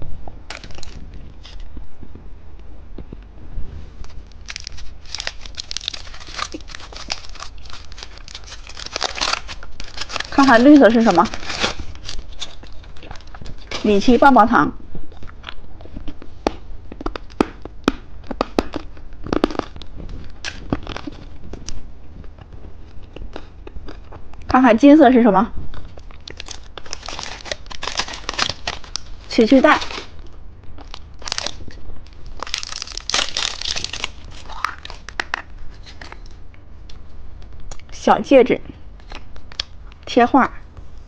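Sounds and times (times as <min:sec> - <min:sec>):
plastic wrapper crinkling: 0:00.5 - 0:01.8, 0:04.0 - 0:14.2, 0:25.7 - 0:36.4.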